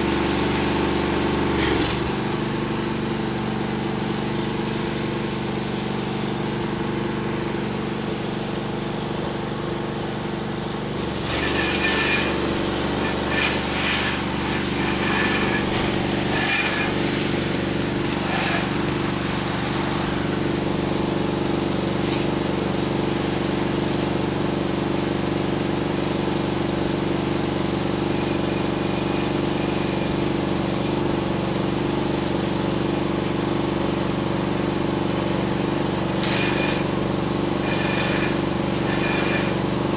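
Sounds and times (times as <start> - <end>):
spray rig engine running: 0.0 - 39.9
hissing spray: 11.0 - 32.7.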